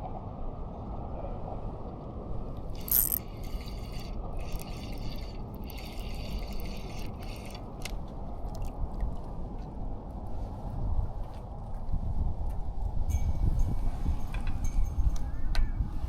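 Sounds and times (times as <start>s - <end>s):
fishing reel cranking: 2.6s - 7.9s.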